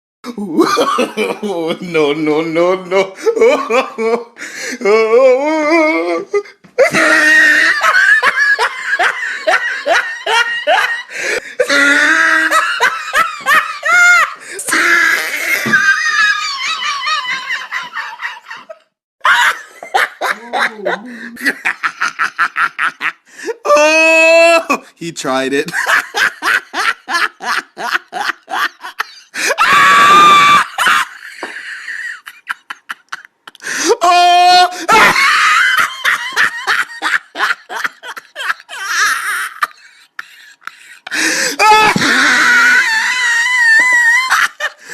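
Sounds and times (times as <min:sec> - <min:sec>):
loud human laughter: 0:00.4 - 0:01.8, 0:06.8 - 0:24.8, 0:25.7 - 0:44.9
high-pitched scream: 0:29.6 - 0:30.8.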